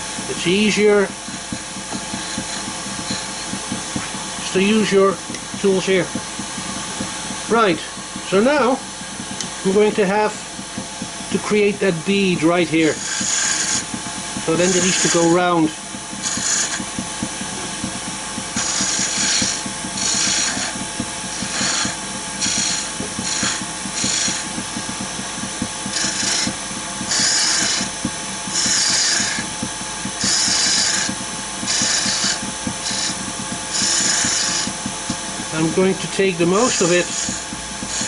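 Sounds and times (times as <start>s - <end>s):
turning tool cutting hiss: 0.0s - 38.0s
wood lathe running: 0.0s - 38.0s.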